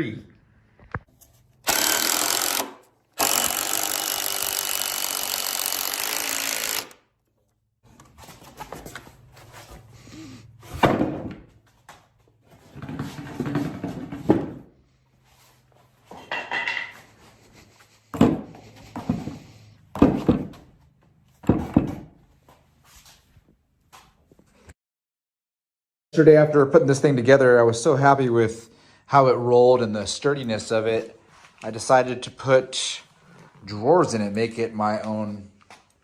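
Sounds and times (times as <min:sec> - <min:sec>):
power drill driving screws: 0:01.6 - 0:07.0.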